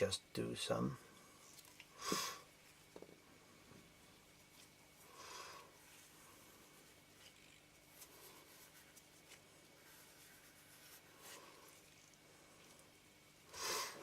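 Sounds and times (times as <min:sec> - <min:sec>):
breathy hiss: 0:00.9 - 0:14.0
tissue rubbing on glass lens: 0:04.0 - 0:13.2.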